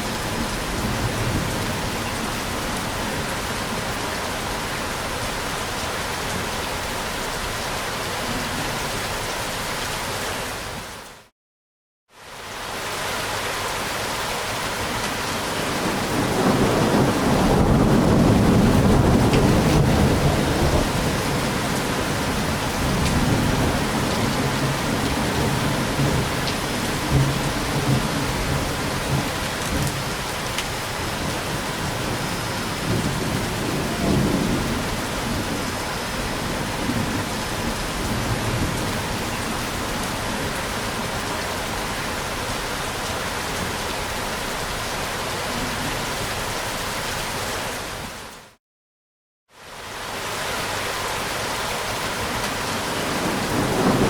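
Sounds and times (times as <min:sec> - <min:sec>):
steady rain falling: 0:00.0 - 0:11.3, 0:12.2 - 0:48.6, 0:49.5 - 0:54.0
rolling thunder: 0:15.7 - 0:30.1, 0:31.0 - 0:39.7, 0:53.0 - 0:54.0.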